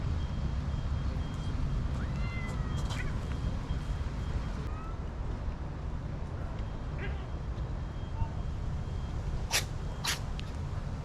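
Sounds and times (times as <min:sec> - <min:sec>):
cats meowing: 0:02.0 - 0:03.2.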